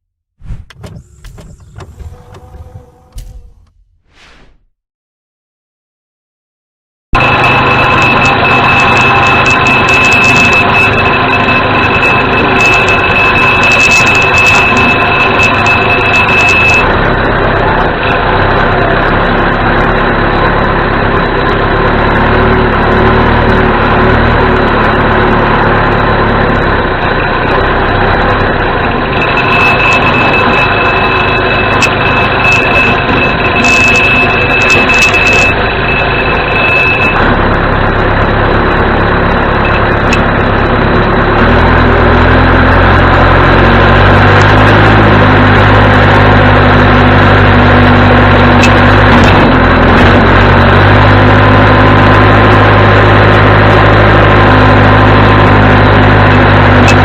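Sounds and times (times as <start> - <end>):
diesel engine running: 0.4 - 4.0, 7.2 - 57.0
high-pitched alarm tone: 7.2 - 17.1, 28.8 - 37.7, 39.0 - 40.4.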